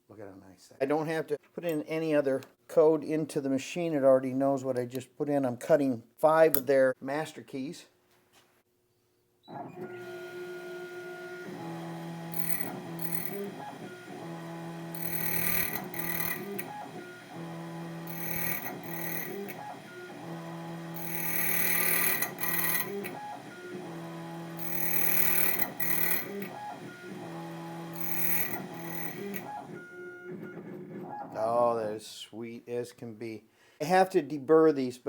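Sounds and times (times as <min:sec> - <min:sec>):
motor hum: 0:09.7 - 0:30.7
high-pitched key cutting noise: 0:12.0 - 0:30.9.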